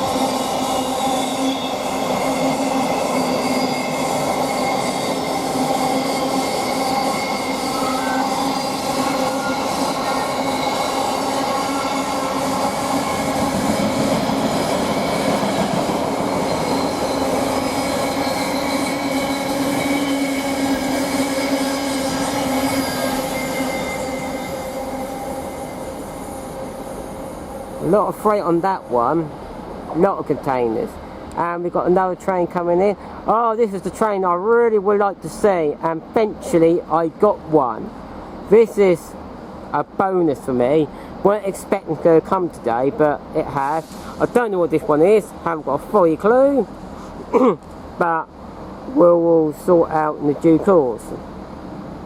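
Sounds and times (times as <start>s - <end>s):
train wheels squealing: 0.0s - 28.5s
freight train rumbling: 0.0s - 52.0s.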